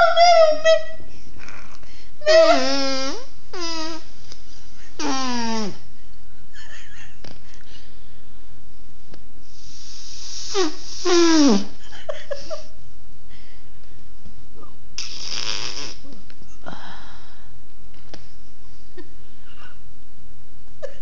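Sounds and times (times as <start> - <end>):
breathy hissing: 1.4 - 5.9, 9.4 - 11.8, 15.0 - 17.6
mouth fart noises: 2.4 - 4.1, 5.0 - 5.9, 10.2 - 11.8, 15.0 - 16.2.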